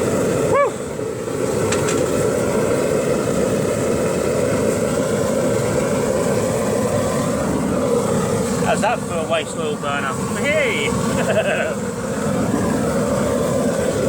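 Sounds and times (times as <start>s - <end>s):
burner roaring: 0.0s - 14.0s.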